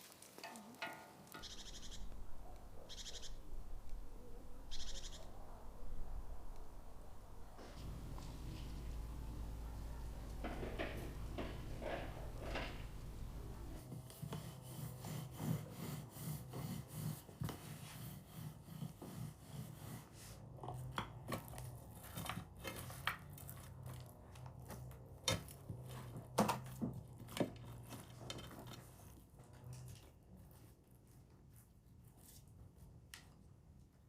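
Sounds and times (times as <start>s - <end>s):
faint low hum: 1.4s - 13.8s
food preparation knocks and clicks: 7.7s - 14.1s.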